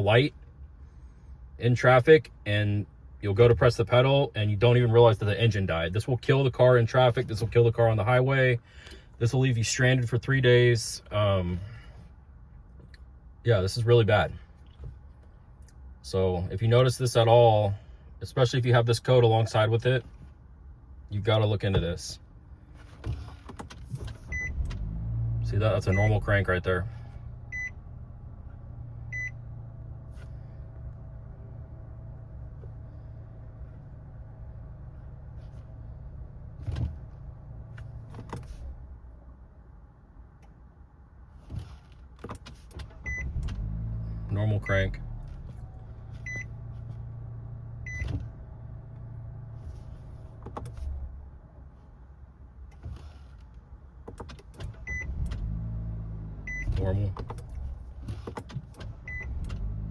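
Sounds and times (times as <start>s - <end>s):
car engine cranking and starting: 1.7s - 39.2s, 41.3s - 51.7s, 52.4s - 59.9s
car engine idling: 19.2s - 59.9s.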